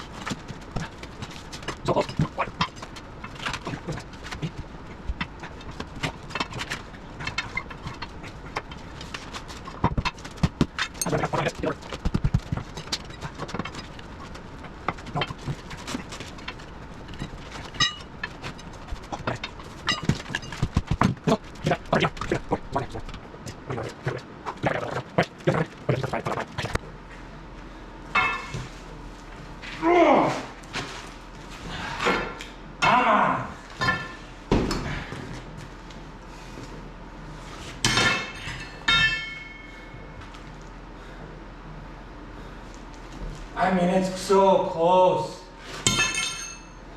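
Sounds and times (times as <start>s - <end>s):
metal clanking on metal: 14.9s - 22.3s, 37.8s - 39.7s.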